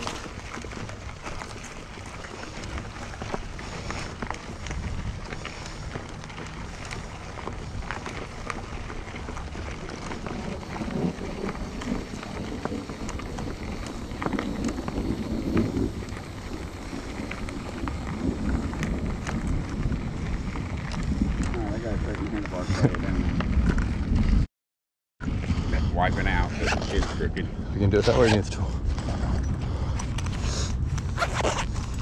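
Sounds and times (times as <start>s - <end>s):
bike tyres on dirt trail: 0.0s - 24.5s, 25.2s - 32.0s.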